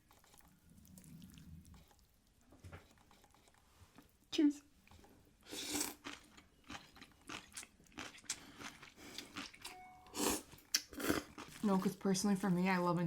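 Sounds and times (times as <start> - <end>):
crunchy biting and chewing: 5.5 - 11.6.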